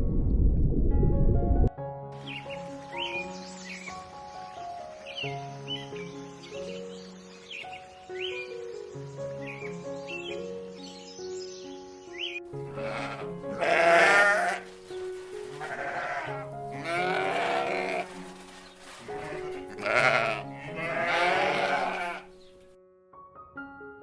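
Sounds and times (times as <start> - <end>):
background music: 0.1 - 24.0
animal bleating: 12.6 - 14.8, 15.4 - 22.5.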